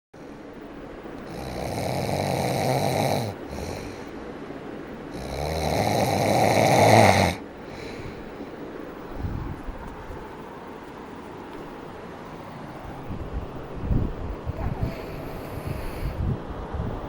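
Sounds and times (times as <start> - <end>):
person snoring: 1.2 - 4.1, 5.1 - 8.0
soft breath: 3.4 - 4.3, 7.6 - 9.7, 14.6 - 16.4.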